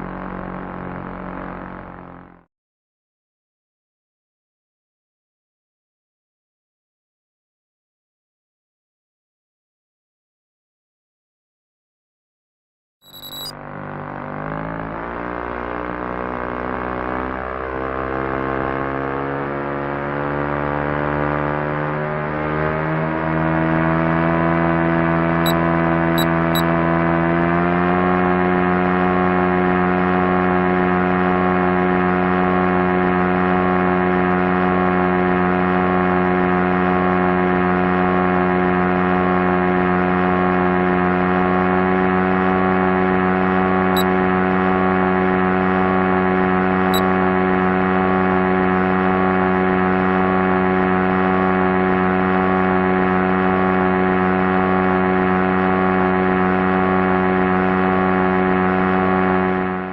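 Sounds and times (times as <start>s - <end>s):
airplane engine drone: 0.0s - 2.2s.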